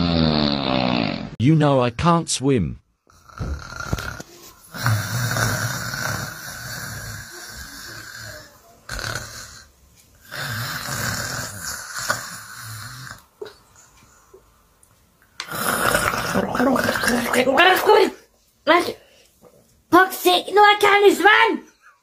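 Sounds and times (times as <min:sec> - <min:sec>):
person snoring: 0:00.0 - 0:01.4, 0:03.1 - 0:13.6, 0:15.5 - 0:17.6.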